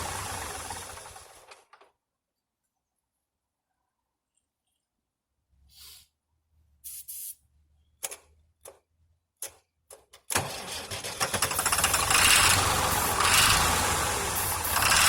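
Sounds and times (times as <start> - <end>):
tractor diesel engine starting: 0.0 - 1.7, 10.3 - 15.0
aerosol spray squirts: 6.8 - 7.4.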